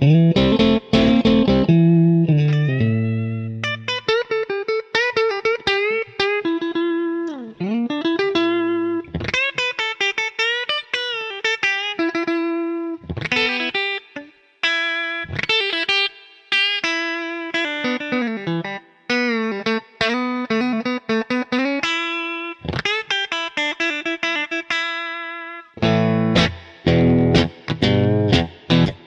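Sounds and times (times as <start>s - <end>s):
electric guitar chords struck: 0.0s - 4.1s, 25.8s - 29.0s
electric guitar lead notes: 0.0s - 29.0s.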